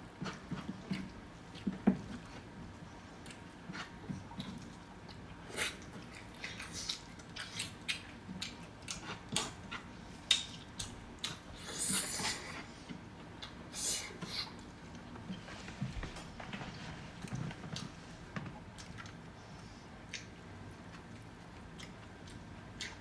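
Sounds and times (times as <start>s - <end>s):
chewing and mouth smacks: 3.2s - 13.6s, 17.2s - 23.0s.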